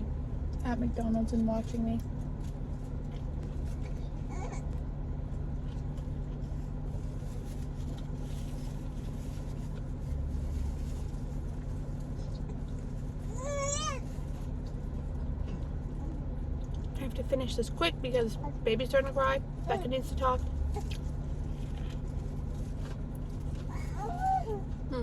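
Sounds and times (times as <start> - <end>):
car idling hum: 0.0 - 25.0
baby crying: 13.3 - 14.0, 23.7 - 24.6.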